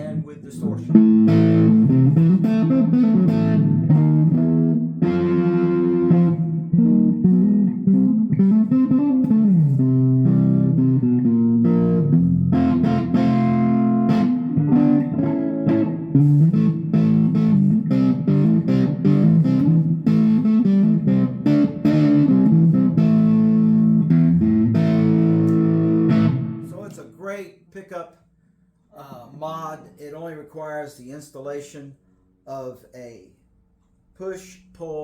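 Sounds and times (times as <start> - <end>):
distorted electric guitar: 0.0 - 26.9.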